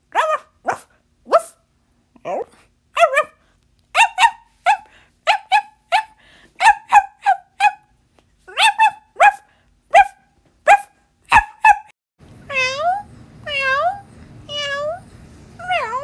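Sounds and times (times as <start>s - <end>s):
person imitating dog barks: 0.1s - 1.6s, 2.2s - 7.9s, 8.5s - 12.0s.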